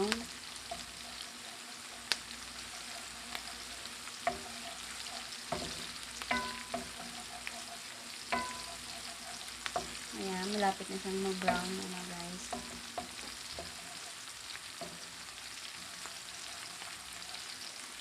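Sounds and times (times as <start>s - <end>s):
meat sizzling in hot oil: 0.0s - 18.0s
utensil clicking against pan: 2.0s - 10.6s, 11.2s - 14.2s.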